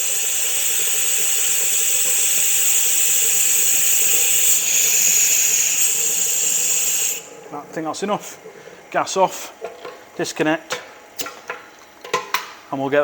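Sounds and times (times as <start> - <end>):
gas hissing from valve: 0.0 - 7.4.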